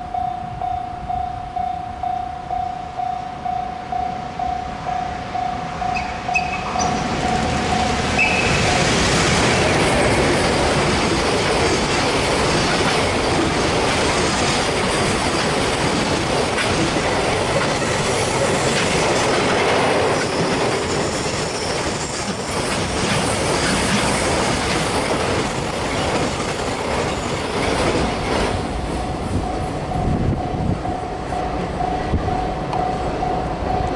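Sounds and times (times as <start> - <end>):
level crossing warning bell: 0.0 - 10.7, 29.0 - 33.9
train rumbling past: 0.0 - 33.9
wheel squeal: 6.0 - 9.0, 20.1 - 24.2
wheels clattering over rail joints: 6.0 - 28.8.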